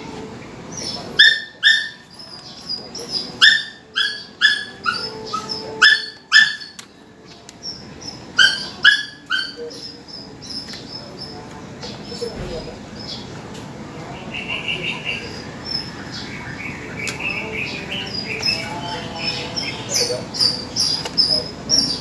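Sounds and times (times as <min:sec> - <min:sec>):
small dog yipping: 0:01.2 - 0:02.4, 0:03.0 - 0:06.8, 0:08.4 - 0:09.9.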